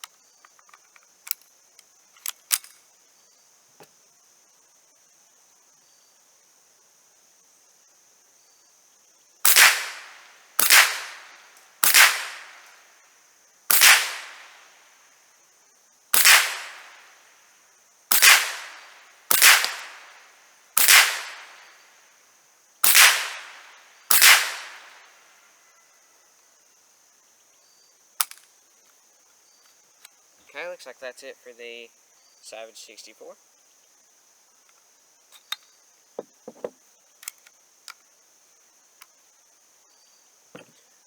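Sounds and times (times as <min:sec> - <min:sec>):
insects buzzing: 0:00.0 - 0:41.0
rifle shots: 0:09.4 - 0:12.8, 0:13.7 - 0:14.7, 0:16.2 - 0:17.2, 0:18.1 - 0:21.8, 0:22.8 - 0:25.1.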